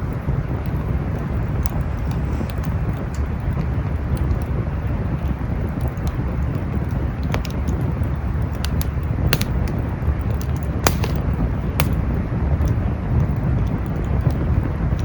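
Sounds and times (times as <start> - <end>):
campfire crackling: 0.0 - 15.0
wood popping sharply: 8.6 - 9.8, 10.4 - 12.2.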